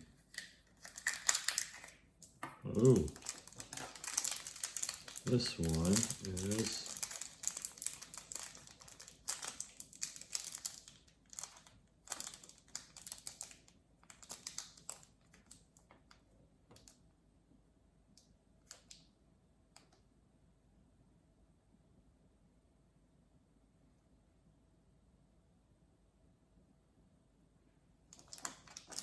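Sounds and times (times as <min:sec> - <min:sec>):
plastic wrapper crinkling: 0:00.2 - 0:02.1, 0:02.7 - 0:16.9, 0:28.2 - 0:29.0.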